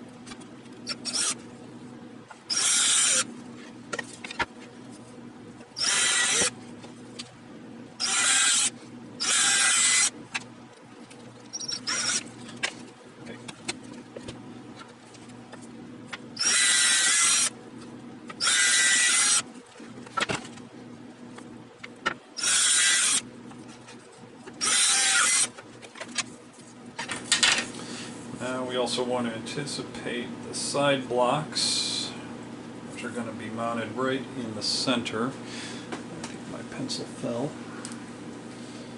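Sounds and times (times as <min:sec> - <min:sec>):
drill boring into wood: 0:01.0 - 0:01.4, 0:02.5 - 0:03.3, 0:05.8 - 0:06.5, 0:08.0 - 0:10.2, 0:11.5 - 0:12.3, 0:16.4 - 0:17.6, 0:18.4 - 0:19.5, 0:22.4 - 0:23.2, 0:24.6 - 0:25.5.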